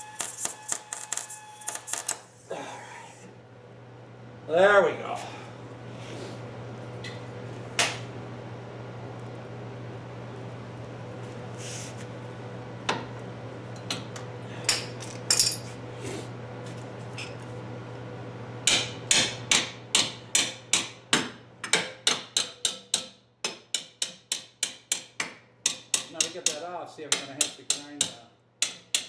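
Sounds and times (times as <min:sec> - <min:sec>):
steady low hum: 0:01.4 - 0:21.6
hammer striking metal: 0:18.7 - 0:29.0.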